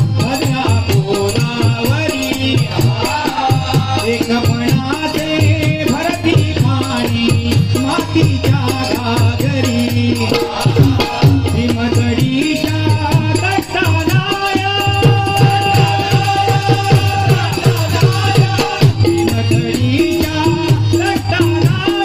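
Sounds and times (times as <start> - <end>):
jingling rattle percussion: 0.0 - 22.0
rhythmic drum beat: 0.0 - 22.0
voices singing: 0.0 - 22.0.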